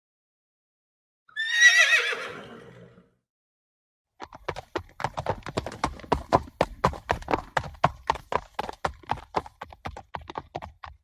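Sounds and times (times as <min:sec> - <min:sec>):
horse whinnying: 0:01.3 - 0:03.1
hooves clip-clopping: 0:04.2 - 0:11.0.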